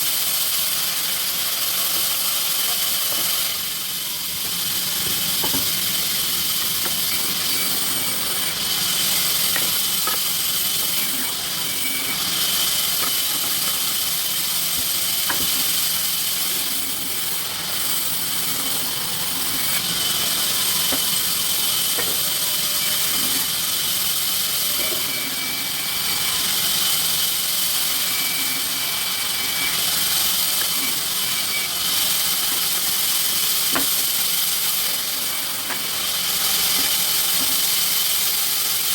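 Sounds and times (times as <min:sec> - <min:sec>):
sawmill machinery running: 0:00.0 - 0:38.9.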